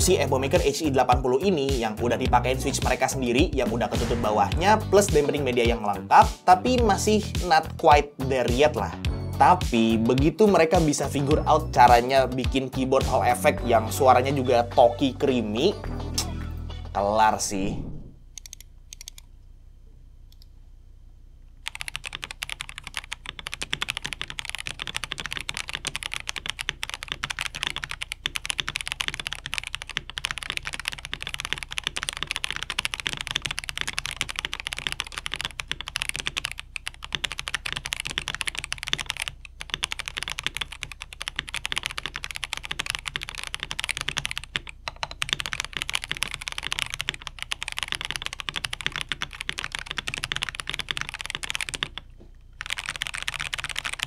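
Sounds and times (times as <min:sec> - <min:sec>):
fast typing on keyboard: 0:21.6 - 0:54.0.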